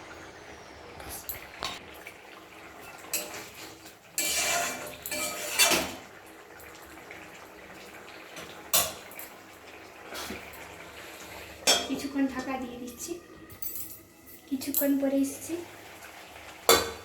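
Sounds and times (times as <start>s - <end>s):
metal utensil scraping a pan: 2.9s - 6.0s.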